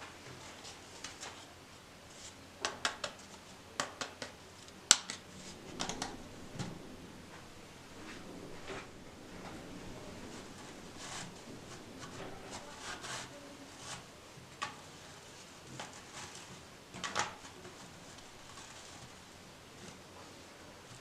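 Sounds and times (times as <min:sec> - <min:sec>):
small objects clicking and tapping: 0:02.6 - 0:06.7, 0:17.0 - 0:17.5.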